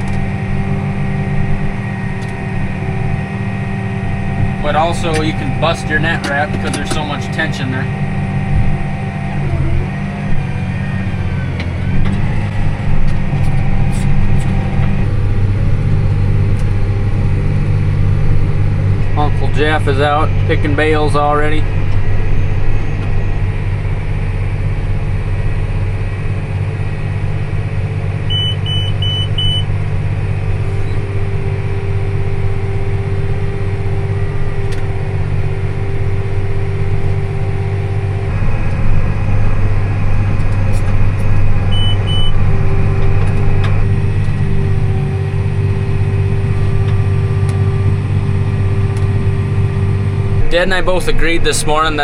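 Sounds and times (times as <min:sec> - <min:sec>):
tractor engine droning: 0:00.0 - 0:52.0
short electronic beeps: 0:28.3 - 0:29.7, 0:41.7 - 0:42.4.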